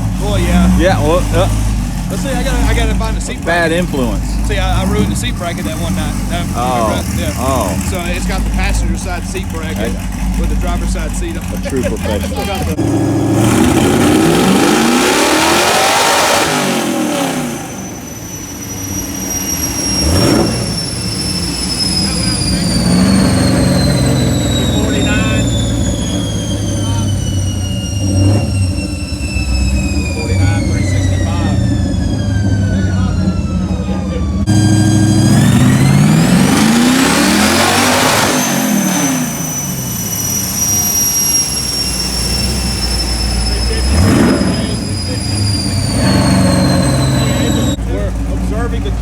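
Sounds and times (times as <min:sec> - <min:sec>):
car engine revving: 0:00.0 - 0:49.0.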